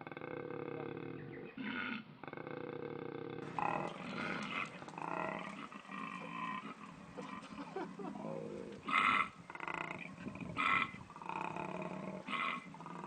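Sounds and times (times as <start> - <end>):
throaty animal calls: 3.4 - 13.0.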